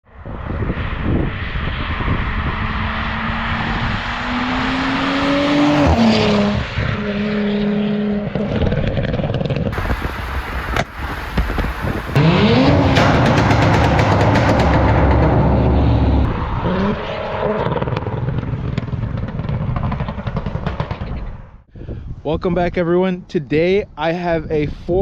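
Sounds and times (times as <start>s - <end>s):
turbocharged car engine revving: 2.0s - 8.6s, 9.8s - 20.4s.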